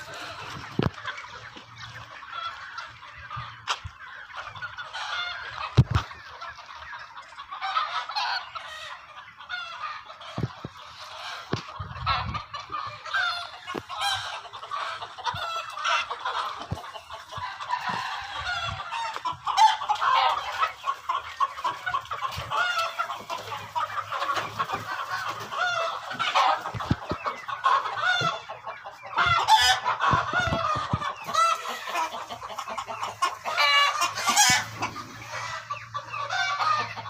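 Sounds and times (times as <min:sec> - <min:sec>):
chickens clucking: 0:00.0 - 0:37.0.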